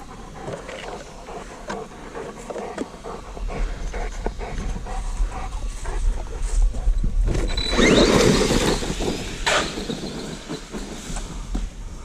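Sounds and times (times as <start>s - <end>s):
dog panting: 0.0s - 7.2s.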